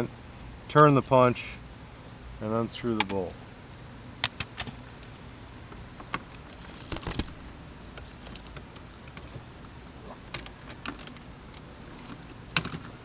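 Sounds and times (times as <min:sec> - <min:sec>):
hand tools clicking and tapping: 0:04.2 - 0:04.7.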